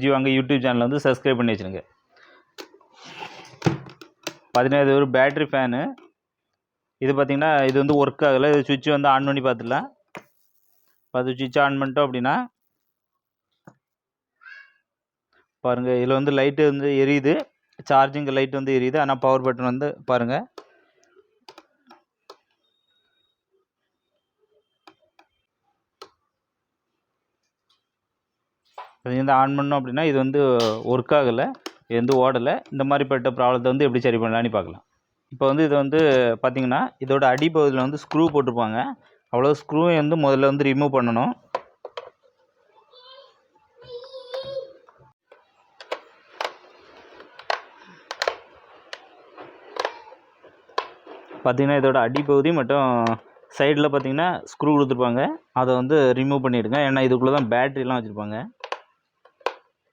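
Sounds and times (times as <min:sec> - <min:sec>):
screwdriver clicks and taps on plastic: 0:21.5 - 0:22.5, 0:58.6 - 0:59.7.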